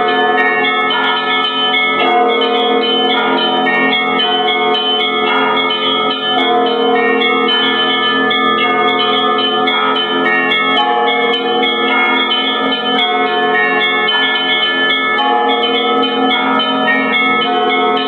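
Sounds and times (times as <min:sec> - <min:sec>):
church bells ringing: 0:00.0 - 0:18.0
hum of large bells: 0:00.0 - 0:18.0.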